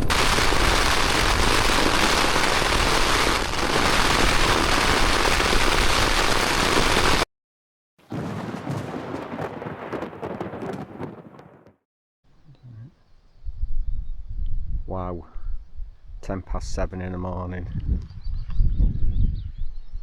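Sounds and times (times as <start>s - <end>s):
heavy rain on a tent: 0.0s - 7.3s.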